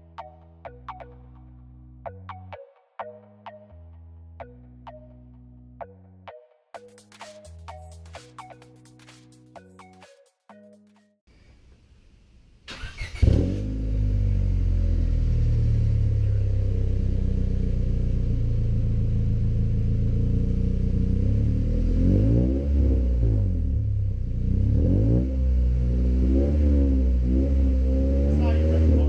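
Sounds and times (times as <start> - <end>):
engine starter cranking: 12.7 - 13.6
car engine idling: 12.7 - 22.0
engine revving: 12.7 - 29.0.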